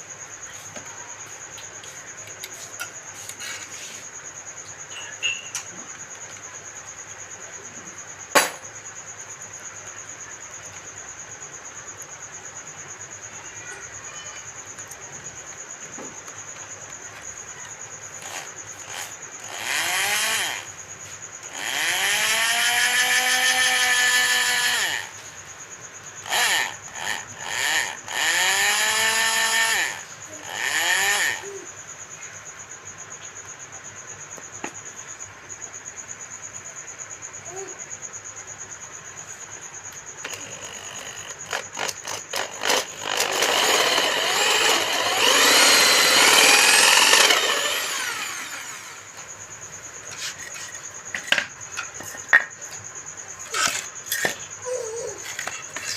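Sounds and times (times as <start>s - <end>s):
crickets chirping: 0.0s - 55.9s
electric drill whining: 18.2s - 20.7s, 21.5s - 25.2s, 26.2s - 31.4s, 40.2s - 49.2s.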